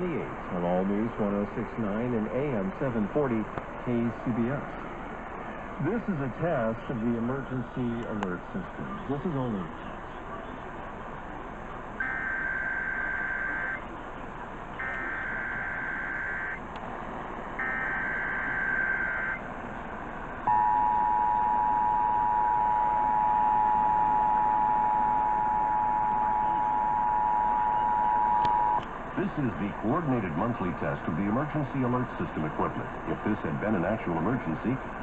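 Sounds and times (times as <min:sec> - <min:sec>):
radio hiss: 0:00.0 - 0:09.9, 0:25.2 - 0:35.0
harsh buzzing data bursts: 0:12.0 - 0:13.8, 0:14.8 - 0:16.6, 0:17.6 - 0:19.4
two-tone attention signal: 0:17.6 - 0:19.4, 0:20.5 - 0:28.8.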